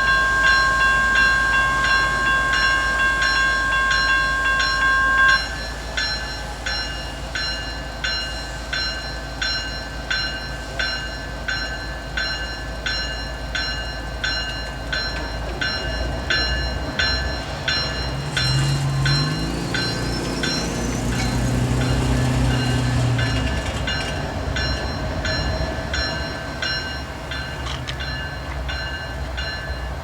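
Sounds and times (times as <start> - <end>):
locomotive horn chord: 0.0 - 5.6
crossing bell dinging: 0.0 - 30.0
freight train rumble: 0.0 - 30.0.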